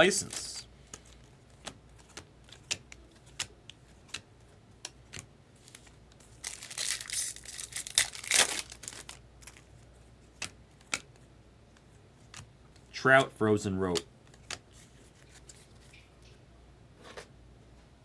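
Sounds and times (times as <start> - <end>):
cards and packaging clicks: 0.1 - 15.6
foil wrapper crinkling and tearing: 5.7 - 9.7.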